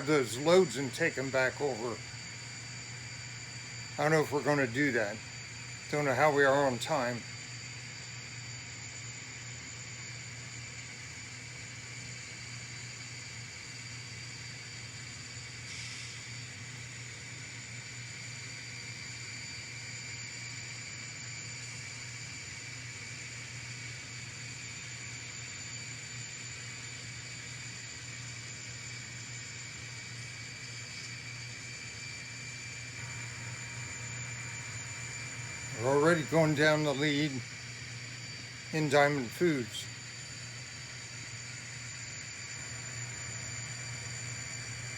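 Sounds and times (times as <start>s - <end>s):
low hum and hiss: 0.0s - 9.6s, 32.6s - 44.9s.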